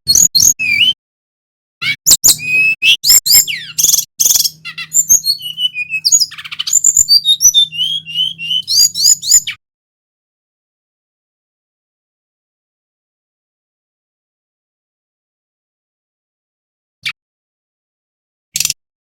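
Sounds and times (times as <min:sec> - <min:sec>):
bird singing whistled notes: 0:00.1 - 0:01.0, 0:01.8 - 0:09.6.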